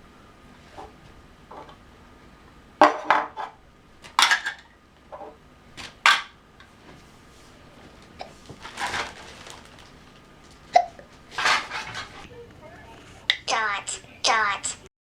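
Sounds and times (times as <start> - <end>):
toy pieces clattering together: 4.2 - 4.7.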